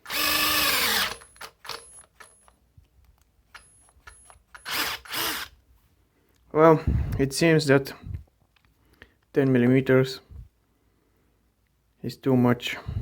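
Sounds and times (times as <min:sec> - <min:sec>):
cordless drill bogging down: 0:00.1 - 0:02.0, 0:04.6 - 0:05.5.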